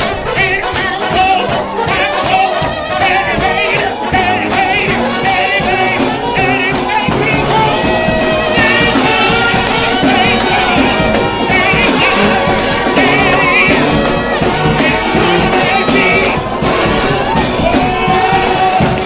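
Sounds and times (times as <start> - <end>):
brass band playing a hymn: 0.0 - 19.0
drums: 0.0 - 19.0
lead horn with vibrato: 0.0 - 19.0.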